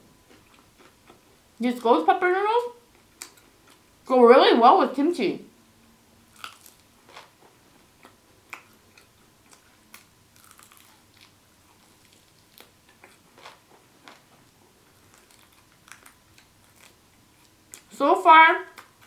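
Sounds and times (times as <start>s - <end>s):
person chewing: 0.3s - 1.2s, 2.9s - 3.8s, 6.3s - 17.9s.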